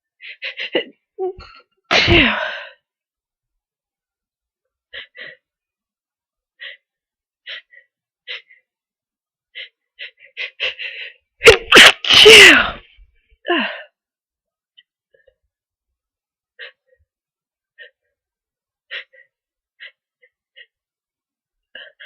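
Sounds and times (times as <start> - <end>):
person sneezing: 1.9 - 2.5, 11.4 - 12.8.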